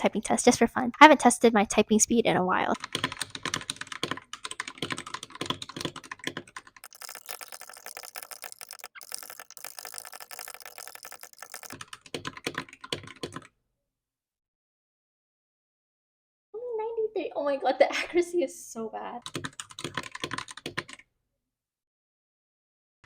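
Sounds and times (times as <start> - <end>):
fast typing on mechanical keyboard: 2.8 - 13.5, 19.2 - 21.0.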